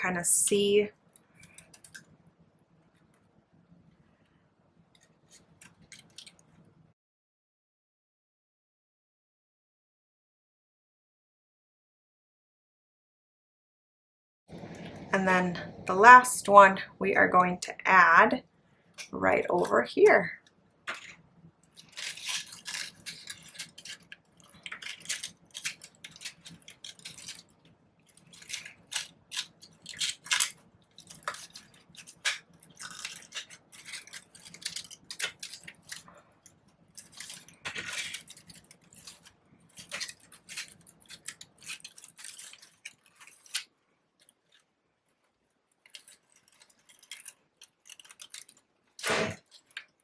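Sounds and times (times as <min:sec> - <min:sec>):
paper crinkling and rustling: 0:01.2 - 0:02.1, 0:04.9 - 0:06.7, 0:20.9 - 0:50.0.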